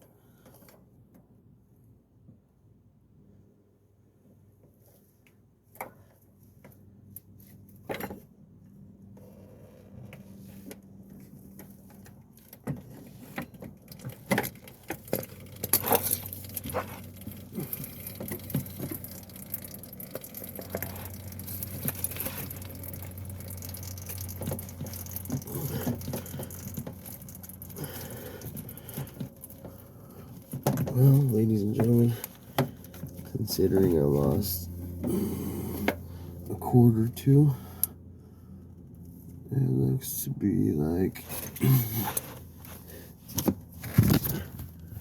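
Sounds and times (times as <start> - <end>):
oil pouring and dripping: 10.2 - 36.0.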